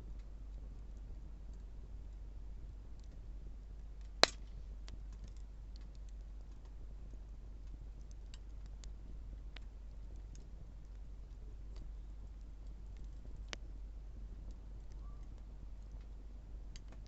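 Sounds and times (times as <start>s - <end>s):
campfire crackling: 0.0s - 17.0s
loud pop of burning wood: 4.2s - 4.6s.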